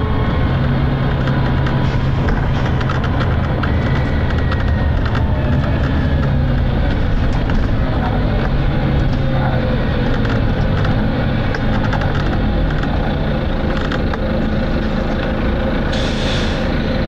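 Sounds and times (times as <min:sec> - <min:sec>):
bus diesel engine drone: 0:00.0 - 0:17.0.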